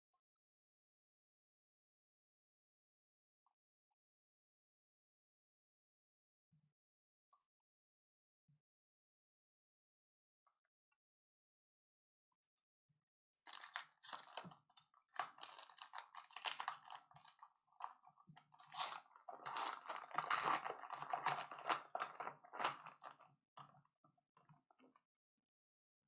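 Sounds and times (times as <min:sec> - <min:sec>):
card pack wrapper crinkling: 0:13.5 - 0:23.2.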